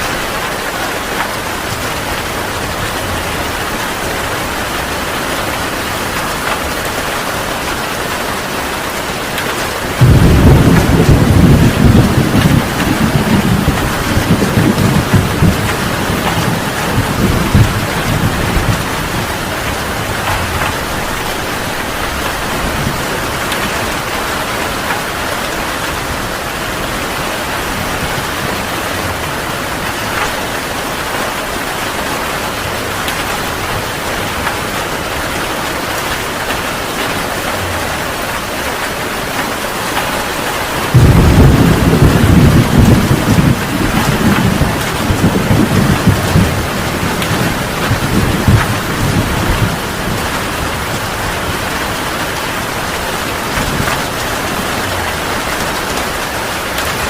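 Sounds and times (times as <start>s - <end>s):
heavy rain hissing: 0.0s - 57.0s
thunder rumbling: 0.0s - 57.0s
loud thunderclap: 9.9s - 24.2s, 40.9s - 52.5s.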